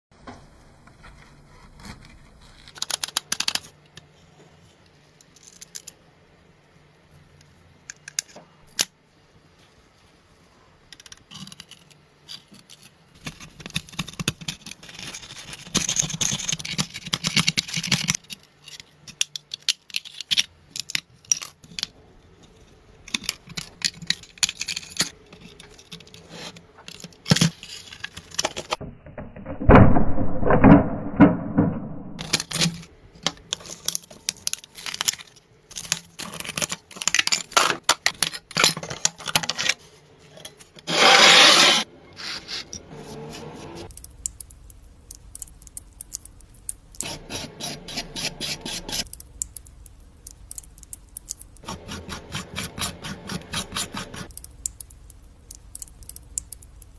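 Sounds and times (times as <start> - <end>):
scraping on toy car: 40.8 - 43.9, 47.0 - 49.1.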